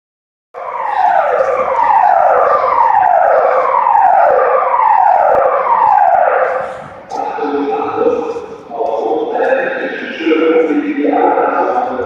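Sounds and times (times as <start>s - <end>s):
fire alarm falling tone: 0.6s - 8.4s.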